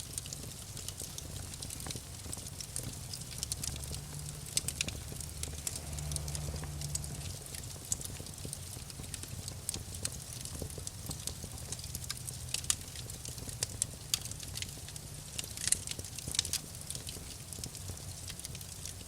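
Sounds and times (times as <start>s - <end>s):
campfire crackling and popping: 0.0s - 19.0s
steady low rumble: 2.6s - 13.3s.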